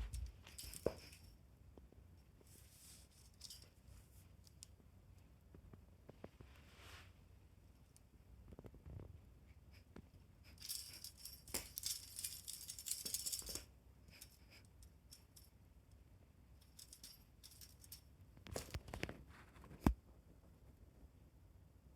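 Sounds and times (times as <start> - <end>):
pet teaser toy rattling and jingling: 0.0 - 1.3, 10.4 - 15.5, 16.6 - 18.0.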